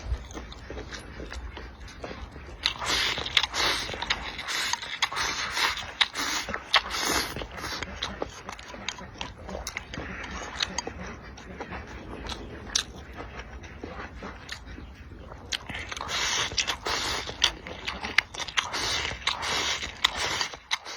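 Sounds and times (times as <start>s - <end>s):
person chewing and biting: 0.0s - 20.9s.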